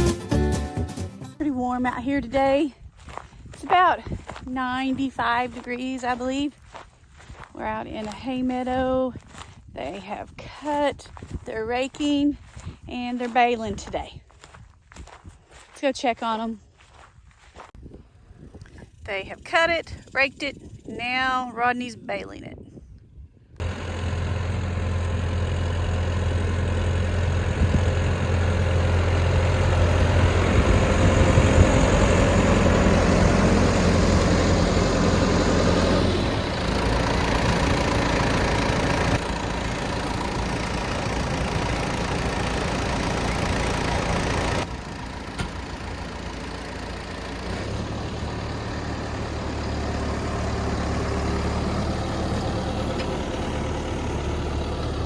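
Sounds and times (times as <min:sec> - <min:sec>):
tractor engine running: 0:00.0 - 0:17.8, 0:23.6 - 0:55.0.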